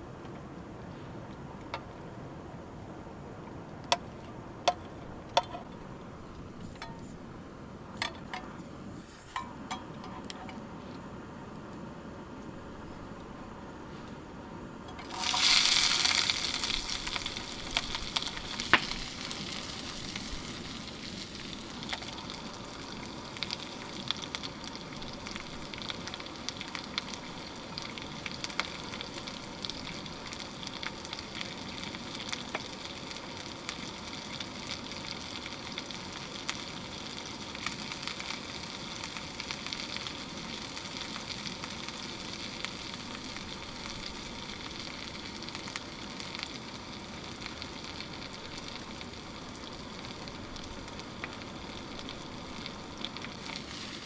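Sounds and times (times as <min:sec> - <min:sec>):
oil popping: 0:15.0 - 0:29.1
food sizzling in frying pan: 0:15.0 - 0:54.0.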